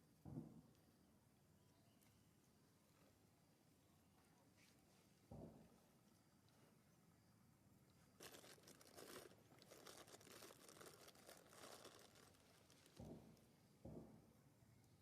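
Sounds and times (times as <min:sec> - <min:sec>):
faint crackling rustle: 0:08.1 - 0:13.5.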